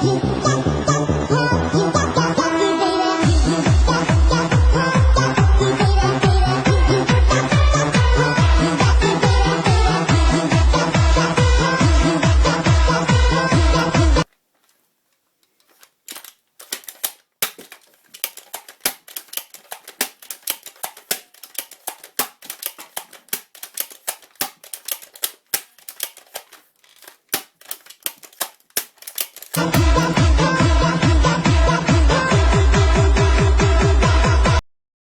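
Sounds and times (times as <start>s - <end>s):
plastic toy blaster clicking: 13.8s - 14.8s, 15.4s - 30.2s.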